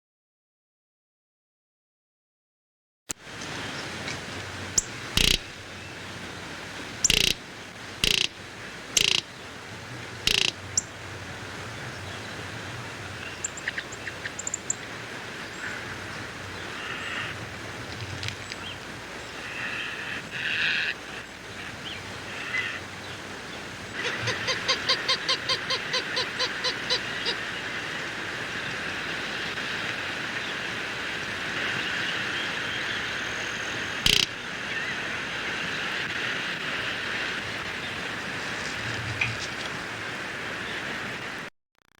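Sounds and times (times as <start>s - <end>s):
outdoor hiss: 3.1s - 41.5s
roadrunner calls: 4.7s - 6.0s, 7.0s - 9.4s, 10.1s - 11.0s, 13.0s - 14.8s, 15.5s - 17.6s, 18.4s - 23.2s, 23.9s - 28.0s, 33.9s - 35.1s
sharp click: 5.2s - 5.4s, 34.1s - 34.3s.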